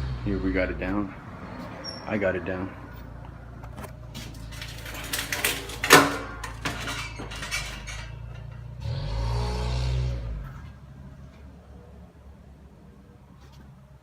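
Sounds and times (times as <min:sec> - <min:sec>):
metal clanks and knocks: 0:03.6 - 0:09.2.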